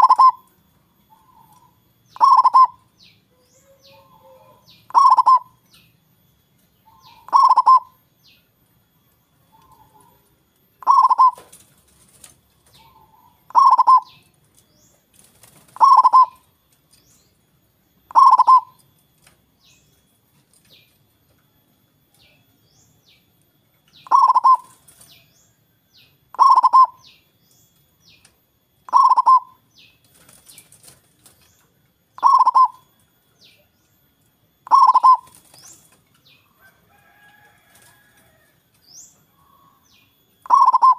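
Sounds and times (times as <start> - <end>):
dove cooing: 0.0 - 0.5, 1.1 - 2.8, 3.6 - 5.6, 6.9 - 8.0, 10.8 - 14.3, 15.4 - 16.4, 18.1 - 18.8, 24.0 - 25.2, 26.3 - 27.2, 28.9 - 29.6, 32.2 - 32.9, 34.6 - 35.8, 40.4 - 40.9.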